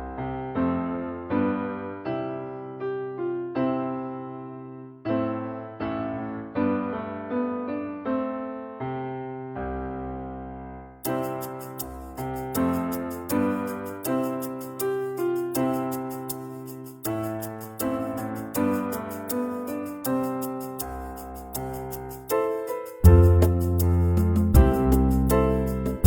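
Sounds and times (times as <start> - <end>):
fast high ticking beat: 16.3 - 26.0.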